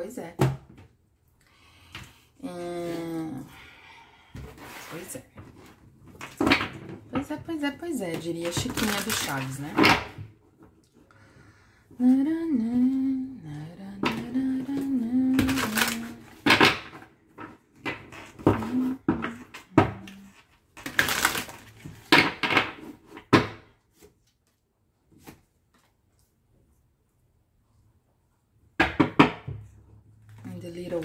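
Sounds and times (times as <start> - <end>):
woman humming: 12.0 - 16.3, 18.5 - 20.3.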